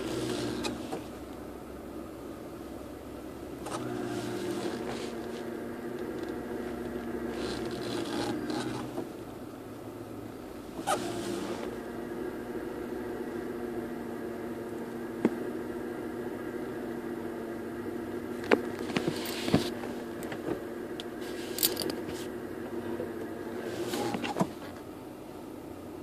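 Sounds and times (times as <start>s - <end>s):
car engine idling: 0.0s - 26.0s.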